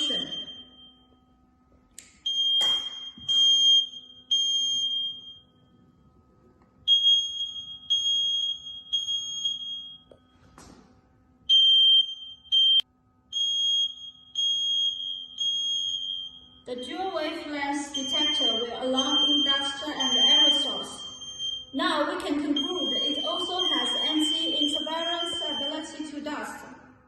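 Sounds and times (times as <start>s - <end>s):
smoke detector beeping: 0.0s - 1.2s, 2.2s - 5.6s, 6.9s - 10.3s, 11.5s - 26.1s.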